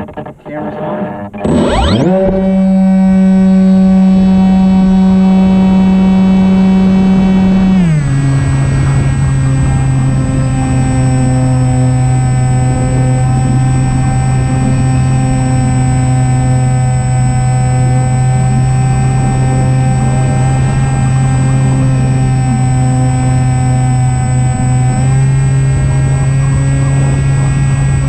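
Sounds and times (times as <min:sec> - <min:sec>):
electric motor and propeller drone: 0:01.4 - 0:28.0
rough wind rush: 0:01.4 - 0:28.0.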